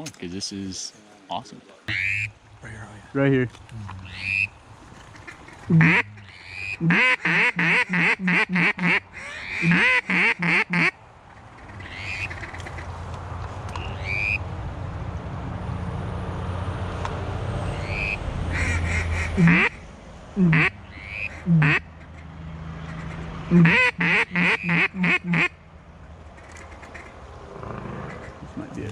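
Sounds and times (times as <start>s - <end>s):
duck call quacks: 1.9s - 2.3s, 4.0s - 4.5s, 5.2s - 11.0s, 11.7s - 12.8s, 13.8s - 14.4s, 17.8s - 19.8s, 20.4s - 21.8s, 22.9s - 25.5s
low steady rumble: 1.9s - 10.1s.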